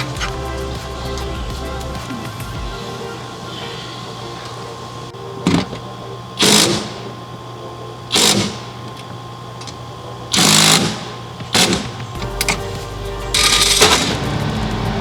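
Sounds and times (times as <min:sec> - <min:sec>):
power tool bursts: 0:06.4 - 0:07.1, 0:08.1 - 0:09.0, 0:10.3 - 0:12.2.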